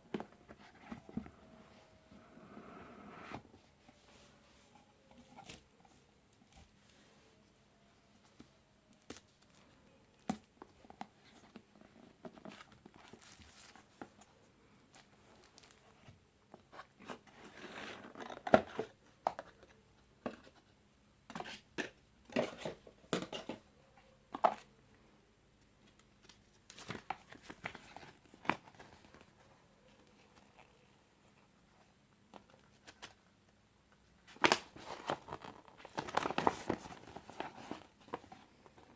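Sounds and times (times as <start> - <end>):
plastic wrap and cardboard crinkling: 8.2 - 14.1, 14.9 - 16.0, 34.2 - 38.9.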